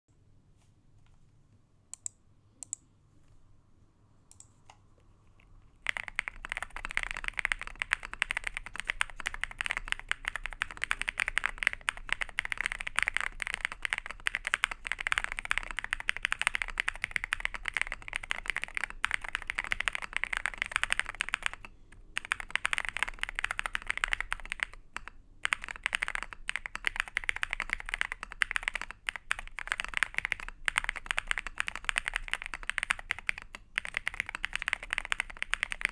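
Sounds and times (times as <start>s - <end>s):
fast typing on mechanical keyboard: 5.8s - 35.9s.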